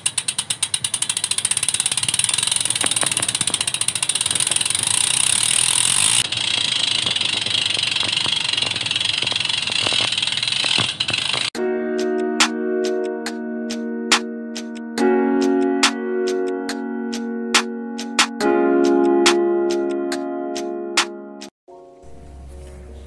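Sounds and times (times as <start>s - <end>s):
bicycle freewheel ratchet clicking: 0.0s - 11.6s.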